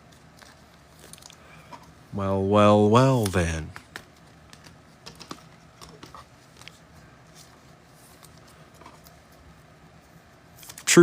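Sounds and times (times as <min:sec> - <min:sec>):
trading cards clicking and tapping: 0:03.2 - 0:06.3.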